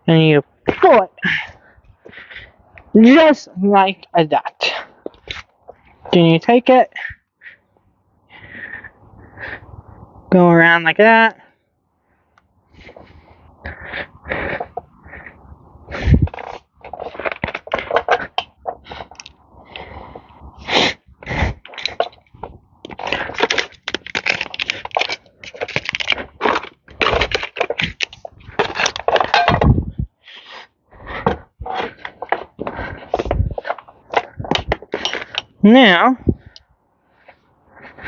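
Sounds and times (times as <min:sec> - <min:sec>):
tools scraping rubber: 0:15.9 - 0:19.9, 0:20.6 - 0:35.6.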